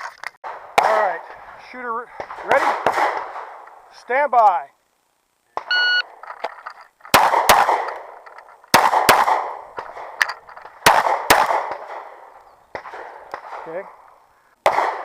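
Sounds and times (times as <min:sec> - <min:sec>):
pistol shots with echo: 0:02.2 - 0:03.6, 0:07.1 - 0:08.1, 0:08.7 - 0:10.2, 0:10.8 - 0:13.7, 0:14.6 - 0:15.0
shot timer beep: 0:05.6 - 0:06.0.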